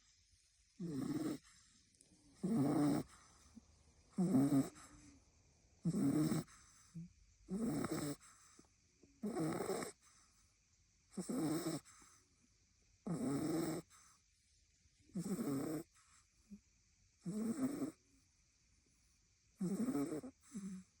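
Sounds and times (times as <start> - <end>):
puppy snoring: 0.8 - 5.2, 5.8 - 10.4, 11.1 - 12.3, 13.0 - 14.2, 15.1 - 16.6, 17.2 - 18.1, 19.6 - 21.0.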